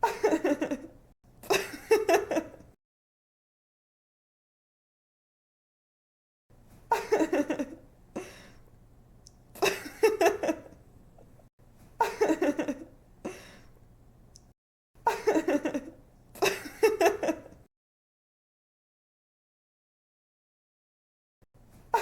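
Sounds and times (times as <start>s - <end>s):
young woman giggling: 0.0s - 2.7s, 6.9s - 7.8s, 15.1s - 17.6s.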